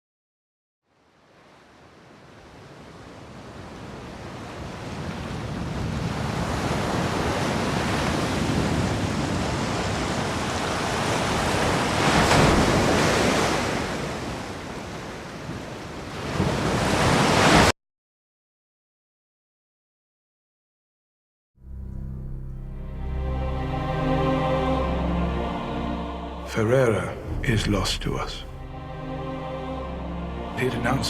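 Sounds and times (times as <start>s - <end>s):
sea surf rushing: 1.1s - 17.7s, 22.9s - 31.0s.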